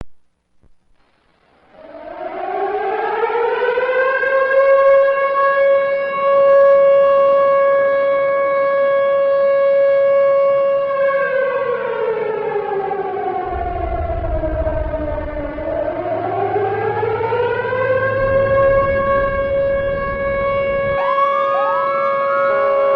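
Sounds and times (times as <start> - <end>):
air raid siren winding: 12.5 - 22.9
low rumble: 13.4 - 21.0.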